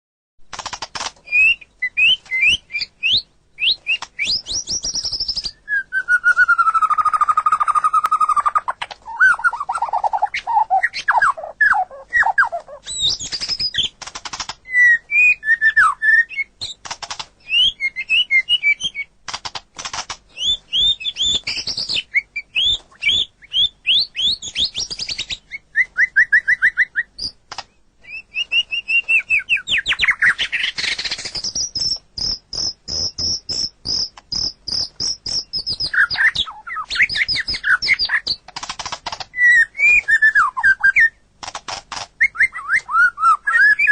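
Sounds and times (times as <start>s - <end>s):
sharp rattling clicks: 0.5s - 1.2s, 13.3s - 14.6s, 16.8s - 17.3s, 19.3s - 20.2s, 38.4s - 39.3s, 41.4s - 42.2s
bird singing whistles and trills: 1.2s - 14.0s, 14.6s - 19.1s, 20.3s - 38.4s, 39.3s - 41.2s, 42.2s - 43.9s.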